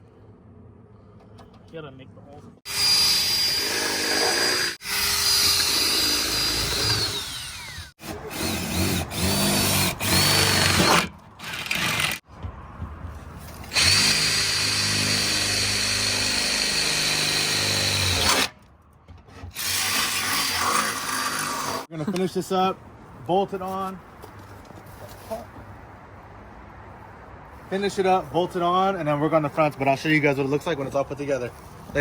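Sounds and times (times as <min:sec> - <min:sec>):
power drill whine: 0:02.7 - 0:11.0, 0:13.7 - 0:18.5.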